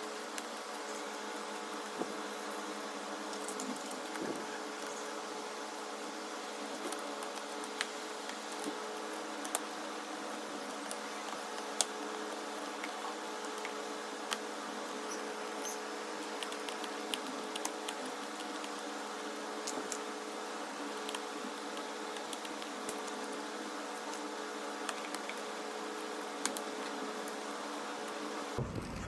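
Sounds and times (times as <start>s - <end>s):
steady background hum: 28.6s - 29.0s.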